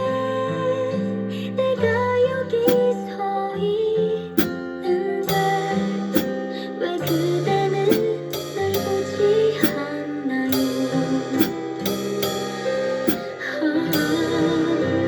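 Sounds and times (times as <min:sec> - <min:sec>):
person singing lightly: 0:01.8 - 0:15.0
guitar chords: 0:02.4 - 0:03.2, 0:04.1 - 0:15.0
drum or cymbal hits: 0:02.7 - 0:02.9, 0:04.4 - 0:04.7, 0:05.3 - 0:15.0.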